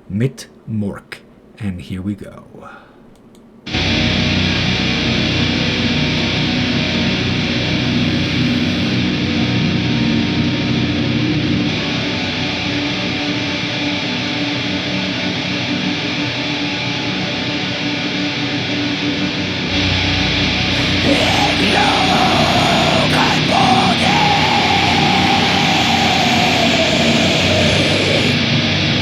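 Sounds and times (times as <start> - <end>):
black metal music: 19.8 - 29.0.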